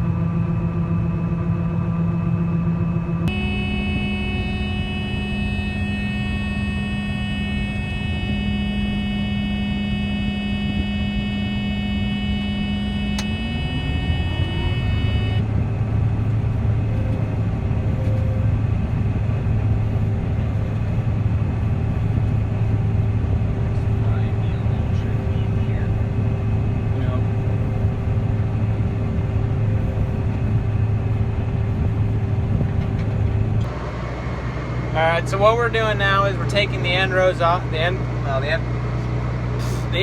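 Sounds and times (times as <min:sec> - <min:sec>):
combine harvester whining: 0:00.0 - 0:40.0
low machine drone: 0:00.0 - 0:40.0
click and rising tone: 0:13.0 - 0:14.7, 0:16.2 - 0:18.5.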